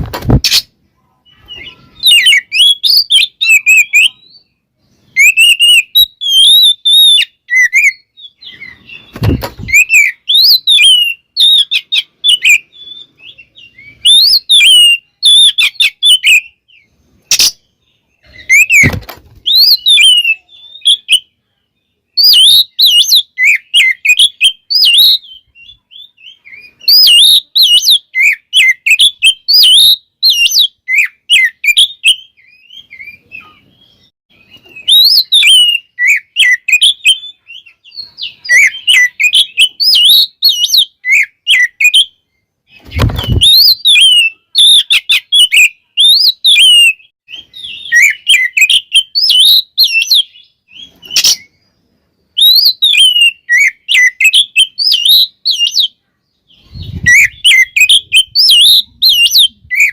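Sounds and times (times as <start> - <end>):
bird singing whistles and chirps: 0.4 - 59.9
dull thumps: 9.2 - 9.8, 18.8 - 19.4.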